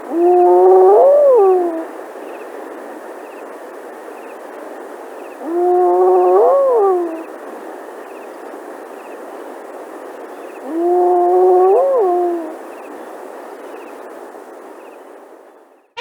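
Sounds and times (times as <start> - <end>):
long animal call: 0.0 - 2.1, 5.0 - 14.1
jungle ambience hiss: 0.0 - 16.0.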